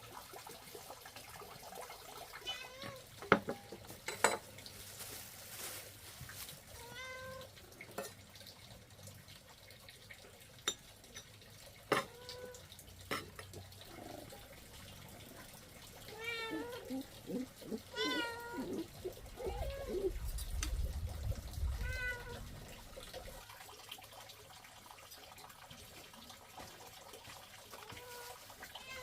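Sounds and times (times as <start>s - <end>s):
cat meowing: 2.4s - 3.1s, 6.8s - 7.5s, 12.1s - 12.6s, 16.1s - 20.2s, 21.7s - 22.4s, 27.9s - 29.0s.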